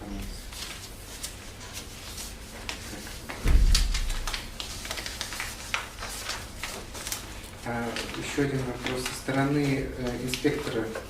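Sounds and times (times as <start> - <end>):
clicks and rustles of handling: 2.6 - 11.0
loud low bump: 3.4 - 4.5.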